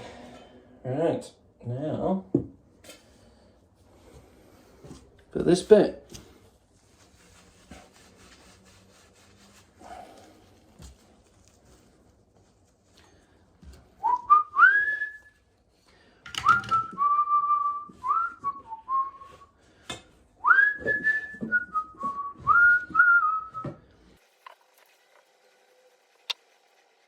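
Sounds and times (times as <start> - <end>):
person whistling a tune: 14.0 - 15.4, 16.4 - 19.5, 20.4 - 23.8.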